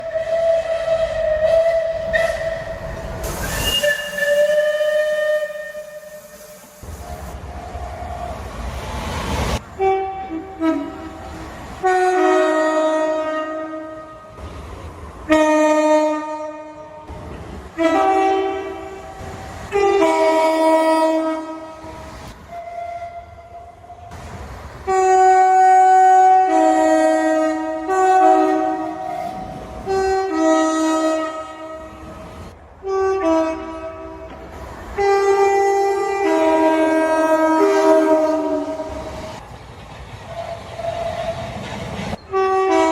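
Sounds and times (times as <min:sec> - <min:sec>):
moving train rumbling: 0:00.0 - 0:42.9
two-note train horn blasts: 0:03.6 - 0:06.8, 0:09.8 - 0:14.3, 0:15.3 - 0:17.1, 0:17.8 - 0:24.1, 0:24.9 - 0:32.2, 0:32.8 - 0:34.4, 0:35.0 - 0:39.3, 0:42.3 - 0:42.9.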